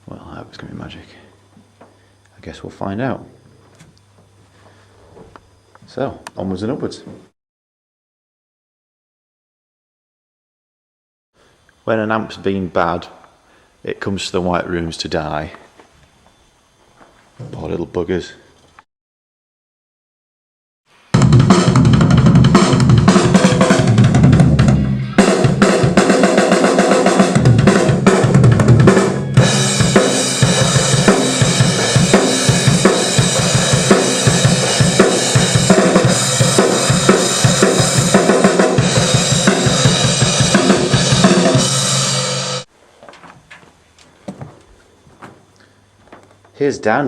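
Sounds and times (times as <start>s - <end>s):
drum kit playing: 21.1s - 42.7s
rock music: 21.2s - 42.7s
cymbals wash: 28.9s - 42.7s.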